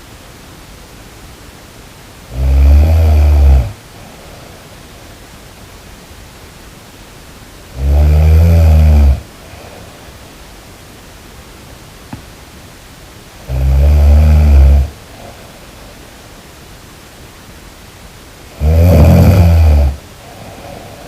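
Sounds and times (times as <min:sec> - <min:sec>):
loud rattling snores: 0:02.3 - 0:03.8, 0:07.7 - 0:09.3, 0:13.4 - 0:15.0, 0:18.5 - 0:21.0
quiet breathing: 0:03.2 - 0:05.3, 0:09.0 - 0:10.5, 0:13.4 - 0:16.4, 0:19.4 - 0:21.0.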